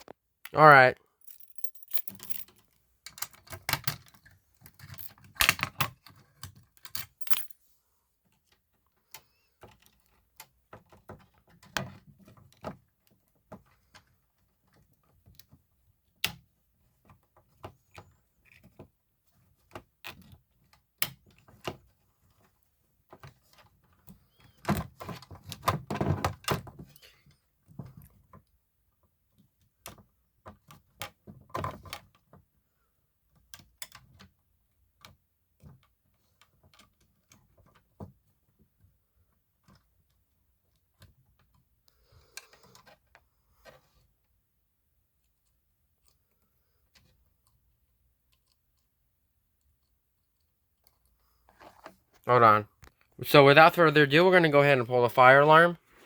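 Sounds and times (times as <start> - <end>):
clicks and rattles of hard objects: 1.2 - 7.6.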